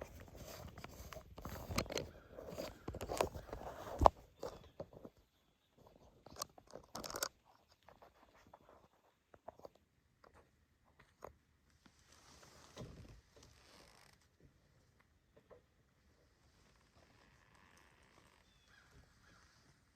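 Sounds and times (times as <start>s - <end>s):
small clicks: 6.2s - 8.1s.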